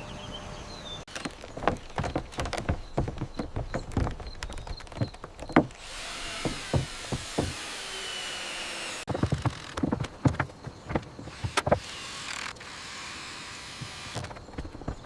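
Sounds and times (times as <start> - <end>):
soft thuds: 1.1 - 8.0, 9.1 - 11.8
hammering on wood: 1.6 - 11.9.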